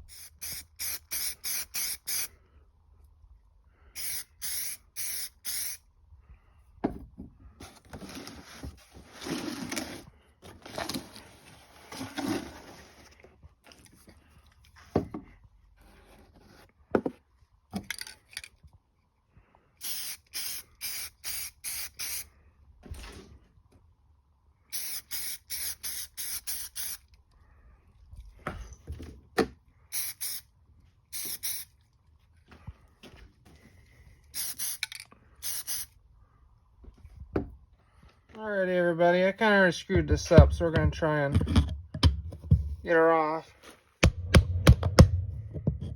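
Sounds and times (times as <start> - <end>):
short hissing strokes on metal: 0.1 - 2.3, 4.0 - 5.8, 19.8 - 22.3, 24.7 - 27.1, 29.9 - 30.5, 31.1 - 31.7, 34.3 - 35.9
sharp knocks: 44.0 - 45.9.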